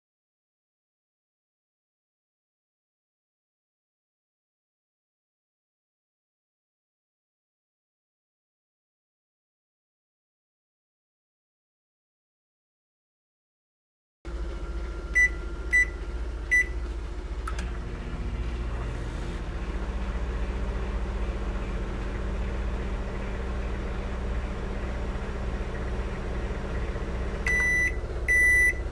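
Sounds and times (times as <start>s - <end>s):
microwave running hum: 14.3s - 28.9s
microwave beeps: 14.9s - 16.9s, 25.4s - 28.9s
long microwave beep: 15.1s - 16.9s, 27.4s - 28.9s.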